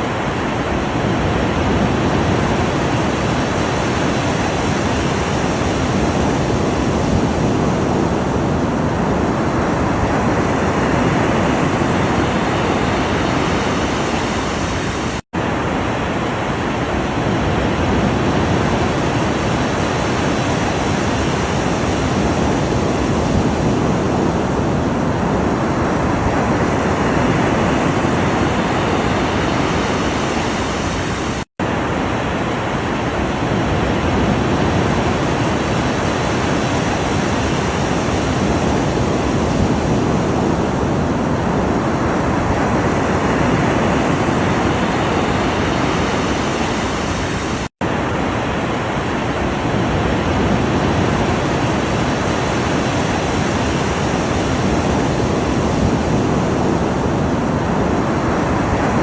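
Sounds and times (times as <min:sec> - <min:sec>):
ocean waves washing: 0:00.0 - 0:59.0.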